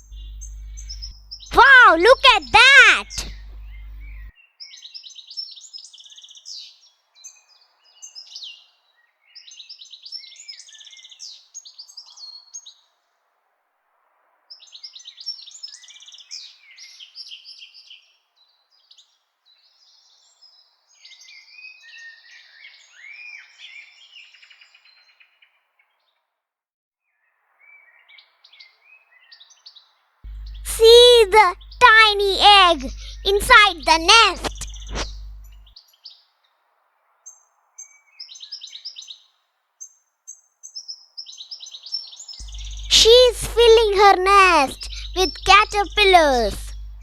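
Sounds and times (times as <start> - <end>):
small birds chirping: 0.0 - 4.3, 30.3 - 35.6, 41.2 - 47.0.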